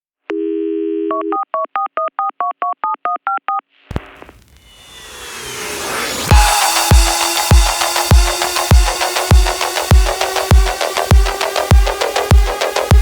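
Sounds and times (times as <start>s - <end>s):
rising whoosh: 3.9s - 11.7s
electronic music with heavy bass: 3.9s - 13.0s.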